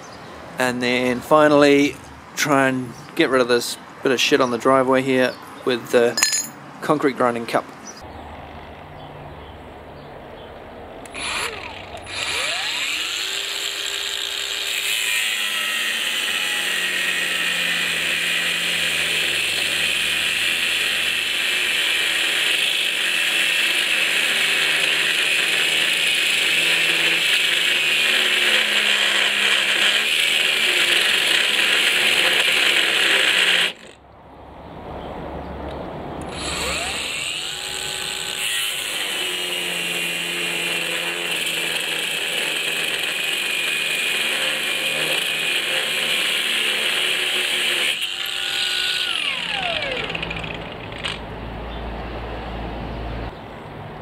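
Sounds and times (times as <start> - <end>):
angle grinder cutting steel: 11.0 - 34.0, 36.2 - 51.3.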